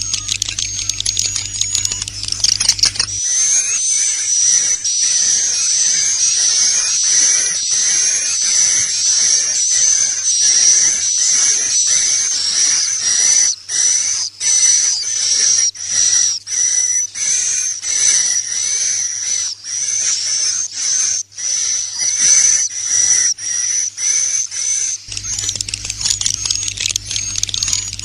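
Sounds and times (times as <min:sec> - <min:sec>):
low hum: 0:00.0 - 0:03.5, 0:25.1 - 0:28.0
recorded swiftlet chirping: 0:00.0 - 0:08.7, 0:25.1 - 0:28.0.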